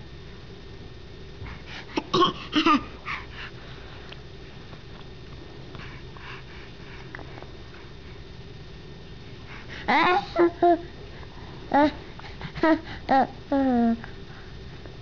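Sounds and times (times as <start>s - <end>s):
person fake coughing: 2.0s - 2.9s.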